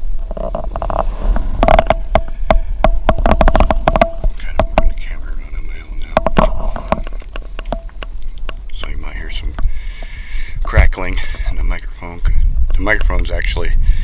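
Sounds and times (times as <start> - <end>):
microphone cord crackling: 0.0 - 10.2
high insect trill: 0.0 - 14.0.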